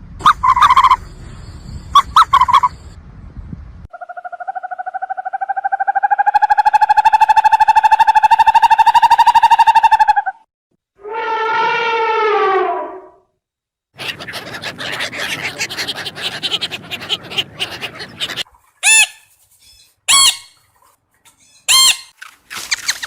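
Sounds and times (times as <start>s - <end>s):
animal call falling in pitch: 11.0s - 13.2s
short sharp squawks: 21.4s - 23.0s.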